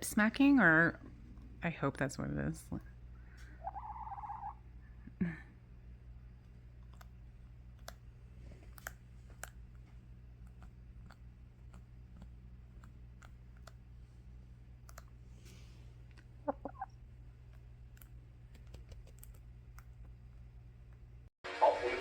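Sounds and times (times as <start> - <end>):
hen clucking softly: 3.5 - 4.6, 16.4 - 16.9.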